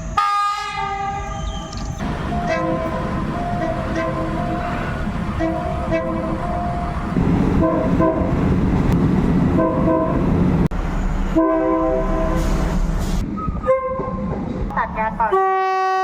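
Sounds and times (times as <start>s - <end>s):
moving train rumble: 0.0s - 16.0s
train horn blasts: 0.2s - 1.4s, 2.0s - 8.7s, 11.3s - 12.6s, 15.3s - 16.0s.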